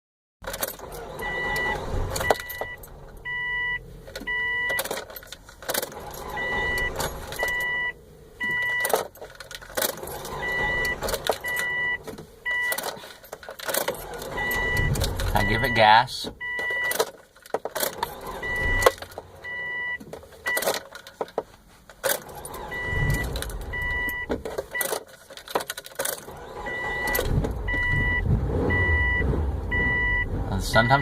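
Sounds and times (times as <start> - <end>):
car warning chime beeping: 0.8 - 5.1, 6.0 - 9.2, 9.9 - 17.1, 17.9 - 20.8, 22.2 - 25.0, 26.2 - 31.0
keys jangling: 12.7 - 14.3.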